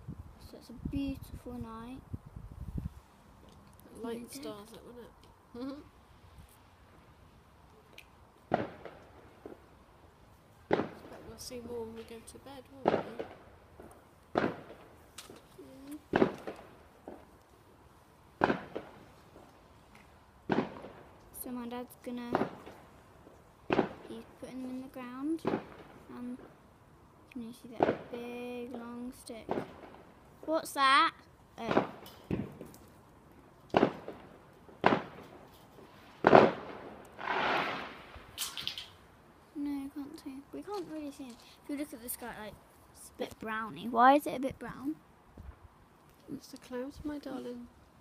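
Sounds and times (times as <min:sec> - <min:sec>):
firework bangs: 0:08.5 - 0:09.7, 0:10.7 - 0:15.0, 0:16.0 - 0:17.3, 0:18.4 - 0:19.5, 0:20.4 - 0:21.2, 0:22.2 - 0:22.9, 0:23.6 - 0:24.4, 0:25.4 - 0:26.6, 0:27.8 - 0:28.2, 0:29.4 - 0:30.1, 0:31.6 - 0:32.7, 0:33.7 - 0:38.9.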